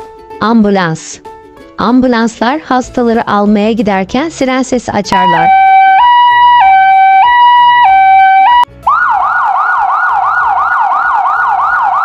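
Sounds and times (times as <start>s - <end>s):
faint background music: 0.0s - 12.0s
ambulance siren: 5.2s - 12.0s.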